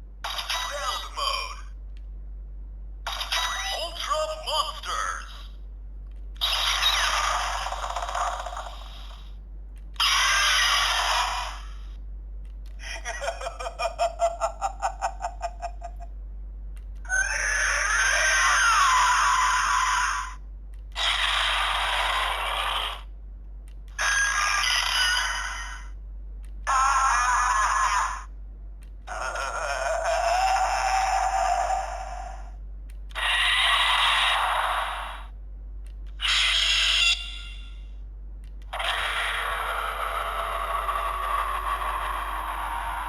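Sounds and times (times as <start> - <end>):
toy electronic sound effects: 0.3 - 1.6, 3.1 - 5.2, 6.4 - 9.2, 10.0 - 11.8, 24.0 - 25.9, 26.7 - 28.3, 33.1 - 35.3, 36.2 - 38.0.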